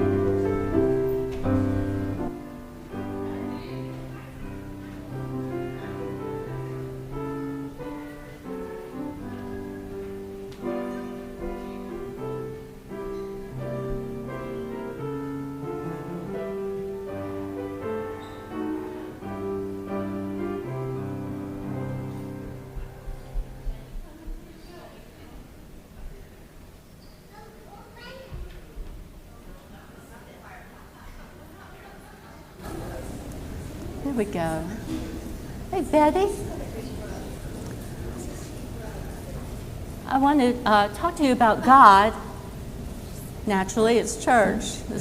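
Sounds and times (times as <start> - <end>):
piano playing slow chords: 0.0 - 24.0.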